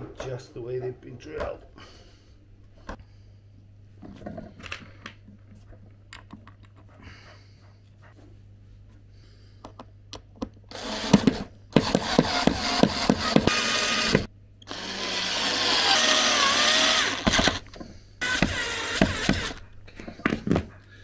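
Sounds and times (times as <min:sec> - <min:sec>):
power drill driving screws: 0:10.7 - 0:17.6, 0:18.2 - 0:19.6
drill clicks: 0:10.7 - 0:19.6.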